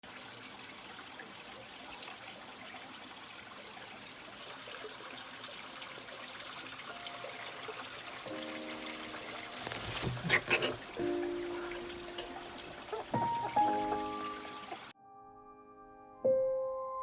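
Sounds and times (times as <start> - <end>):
water trickling: 0.0 - 14.9.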